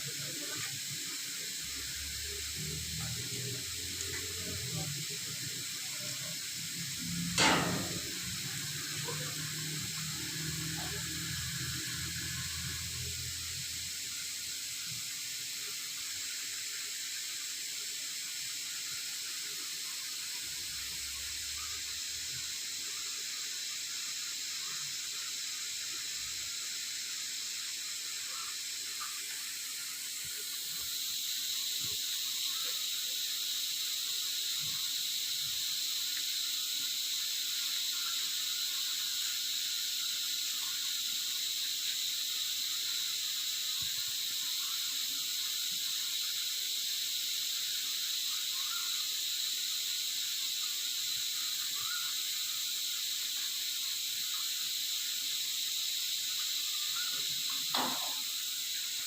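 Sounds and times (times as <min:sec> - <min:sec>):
spraying water hiss: 0:00.0 - 0:59.0
sharp loud knock: 0:07.4 - 0:08.4.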